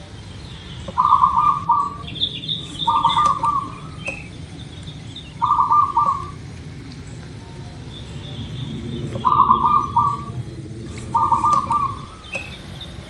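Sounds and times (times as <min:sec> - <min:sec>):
small bird twittering: 0:00.4 - 0:06.4, 0:11.1 - 0:13.0
dove cooing: 0:00.9 - 0:04.3, 0:05.4 - 0:07.0, 0:09.0 - 0:12.6.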